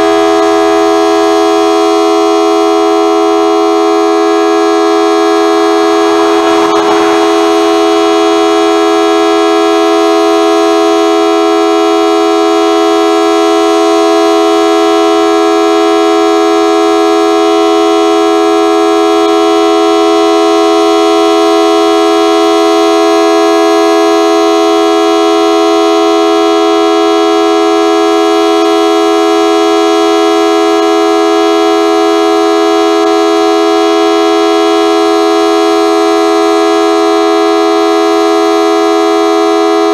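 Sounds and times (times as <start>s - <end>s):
two-tone warning siren: 0.0s - 39.9s
rush of noise: 5.9s - 9.1s.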